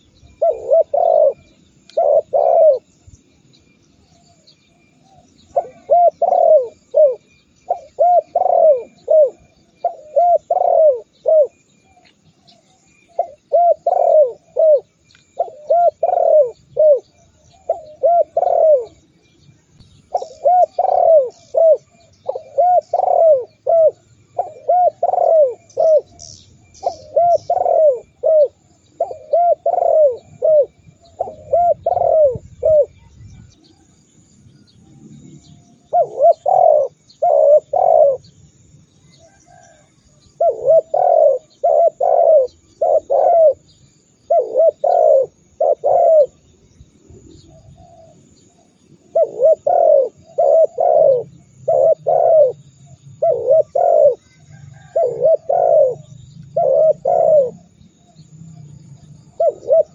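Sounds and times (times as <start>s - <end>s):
dove cooing: 0.0s - 3.0s, 4.0s - 19.1s, 20.0s - 34.0s, 34.6s - 59.9s
small birds chirping: 0.0s - 59.9s.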